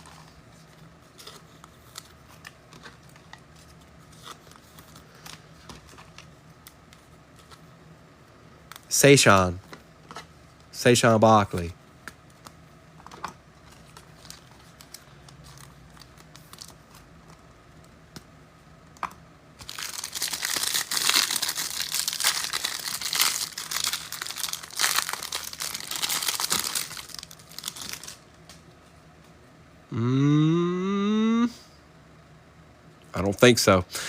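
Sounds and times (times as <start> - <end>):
wrapper tearing and crinkling: 13.8 - 16.8, 19.6 - 28.2.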